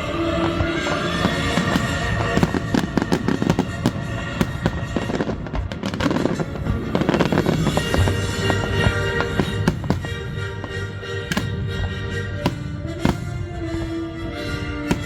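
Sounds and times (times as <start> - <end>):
fireworks crackling and popping: 0.0 - 15.0
music playing: 0.0 - 15.0.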